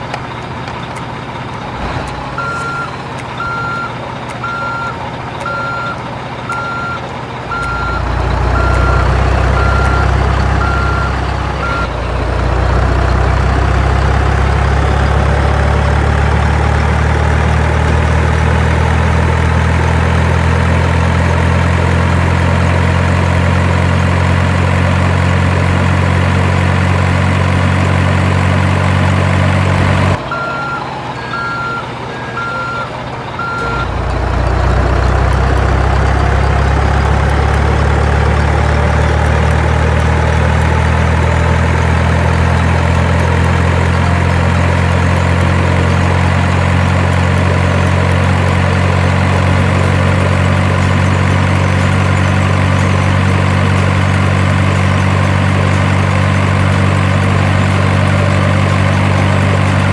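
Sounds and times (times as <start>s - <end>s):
truck engine idling: 0.0s - 59.9s
reversing alarm beeping: 2.4s - 12.0s, 30.2s - 59.9s.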